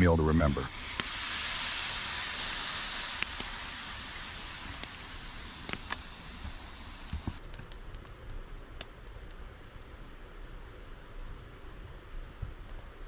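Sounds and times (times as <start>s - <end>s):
food sizzling over fire: 0.0s - 7.5s
fire crackling and popping: 0.0s - 13.0s.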